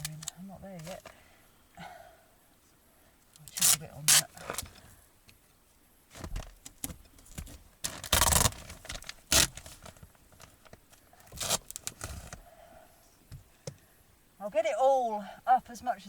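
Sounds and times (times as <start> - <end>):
insulation scraping and tearing: 3.4 - 4.7, 6.1 - 12.4.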